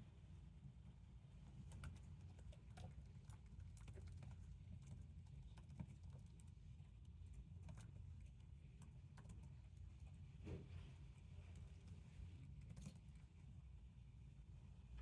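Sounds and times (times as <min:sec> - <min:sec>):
low room hum: 0:00.0 - 0:15.0
soft keyboard typing: 0:01.7 - 0:06.6, 0:08.8 - 0:09.7.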